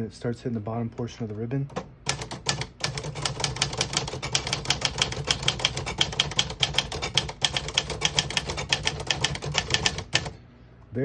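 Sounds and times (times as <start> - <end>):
typewriter keys striking: 1.7 - 10.4.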